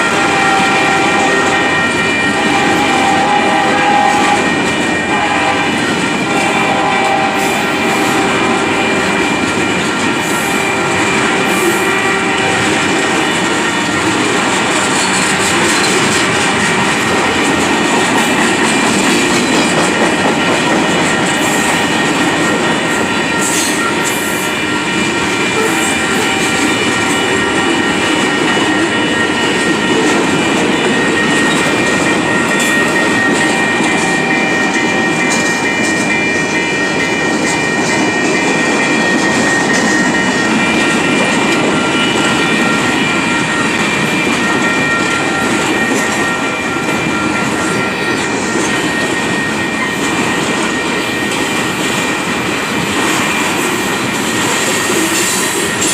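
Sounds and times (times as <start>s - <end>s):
train wheels clattering: 0.0s - 55.9s.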